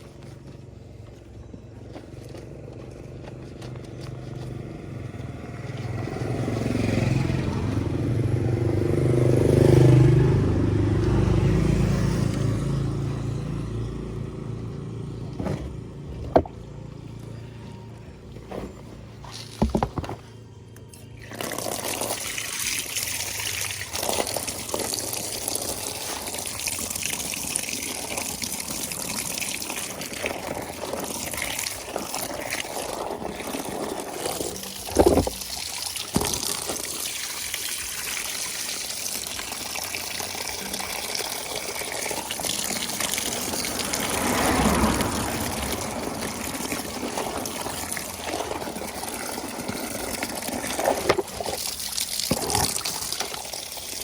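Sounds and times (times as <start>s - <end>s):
water running and splashing: 21.1s - 54.0s.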